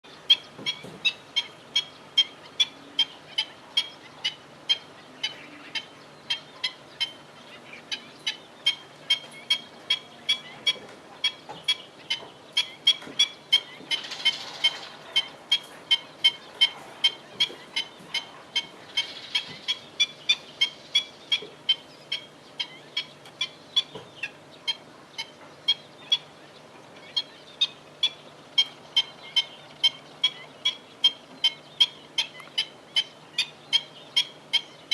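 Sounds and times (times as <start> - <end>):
bird calling high sharp notes: 12.6 - 24.8.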